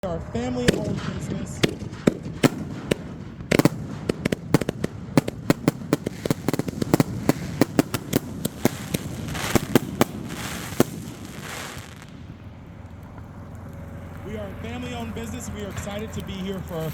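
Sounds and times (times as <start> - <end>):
fireworks bangs: 0.0 - 13.2
fireworks crackling hiss: 0.6 - 16.9.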